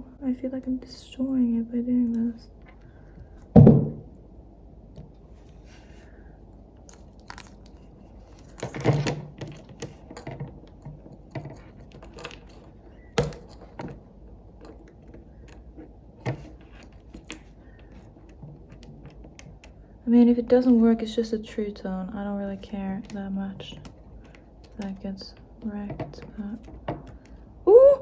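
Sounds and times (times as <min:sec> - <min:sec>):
small tools clicking and scraping: 0:06.8 - 0:14.0.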